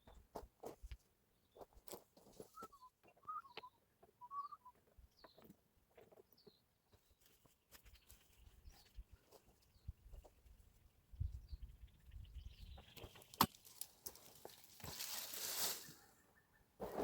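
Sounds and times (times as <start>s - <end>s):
faint bird chirping: 2.4s - 13.4s, 15.7s - 16.8s.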